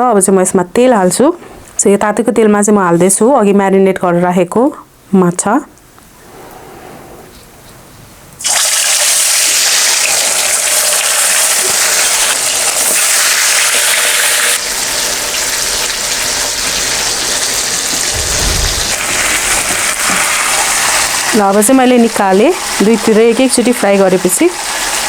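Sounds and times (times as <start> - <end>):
fish sizzling in hot oil: 8.4 - 18.2, 18.8 - 25.0.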